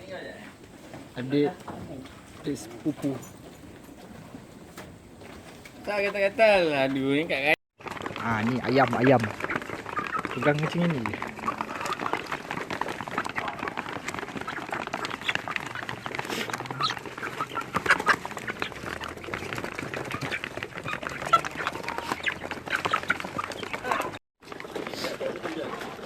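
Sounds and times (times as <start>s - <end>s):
chickens clucking: 0.0s - 26.0s.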